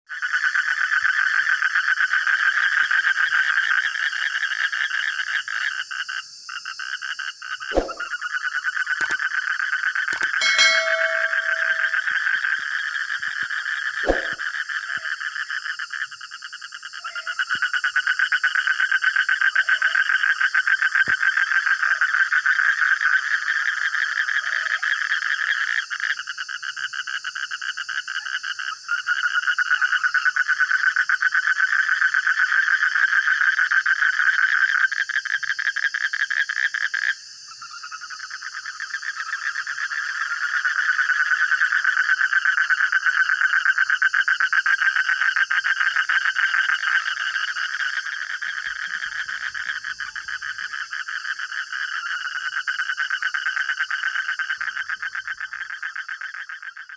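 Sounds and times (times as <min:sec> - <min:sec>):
sharp click: 0:07.7 - 0:08.1, 0:10.2 - 0:12.0, 0:14.0 - 0:14.4
frogs trilling: 0:33.1 - 0:56.9.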